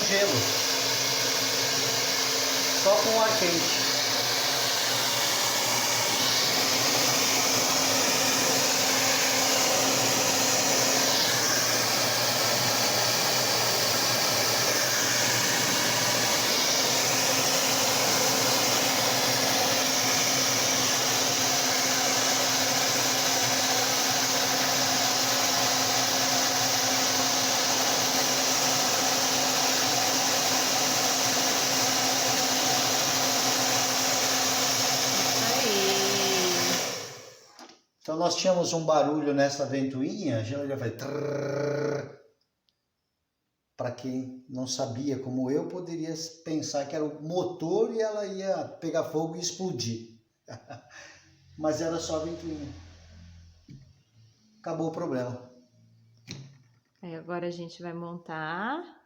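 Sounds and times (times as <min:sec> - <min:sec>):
hair dryer blowing: 0:00.0 - 0:37.7, 0:51.3 - 0:53.9.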